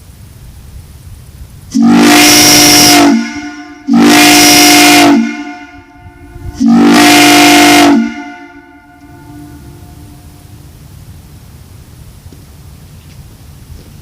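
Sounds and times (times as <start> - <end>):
train whistle blasts: 1.7 - 10.5.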